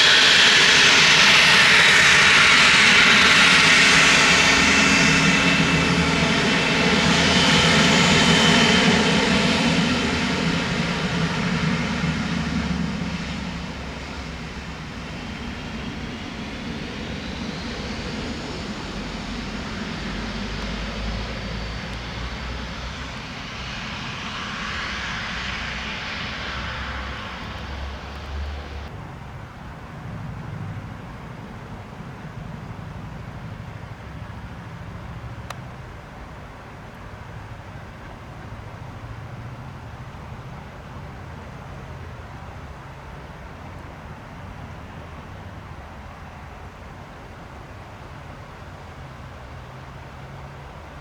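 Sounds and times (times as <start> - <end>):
jet engines whining: 0.0 - 28.9.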